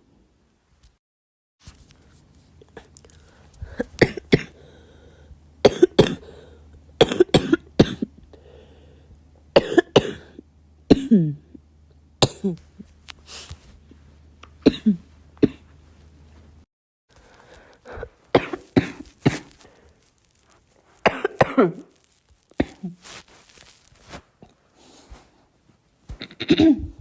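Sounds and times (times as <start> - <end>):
girl coughing: 3.6 - 4.7, 5.6 - 8.1, 9.6 - 11.4, 12.2 - 12.7, 14.6 - 15.6, 18.4 - 19.5, 21.1 - 21.9, 22.6 - 23.0, 26.2 - 27.0.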